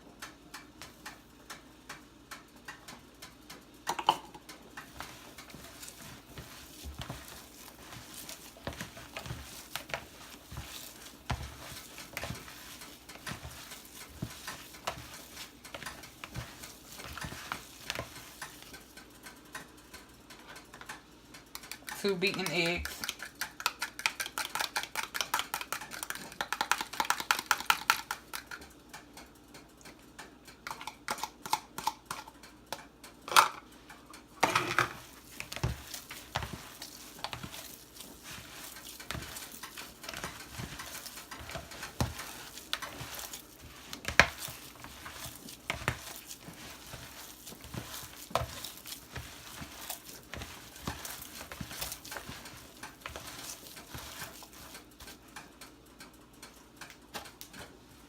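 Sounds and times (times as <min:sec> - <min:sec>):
utensil taps and scrapes: 0:03.9 - 0:19.7, 0:34.4 - 0:55.2.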